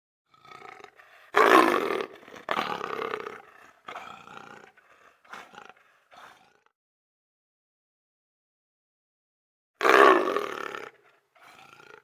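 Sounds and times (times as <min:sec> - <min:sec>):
leopard roaring: 0:00.4 - 0:06.6, 0:09.8 - 0:12.0.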